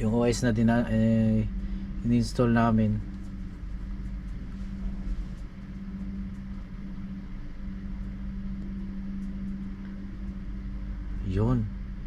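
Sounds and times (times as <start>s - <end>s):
low machine hum: 0.0s - 12.0s
low rumble: 0.0s - 12.0s
faint ticks: 7.9s - 10.7s.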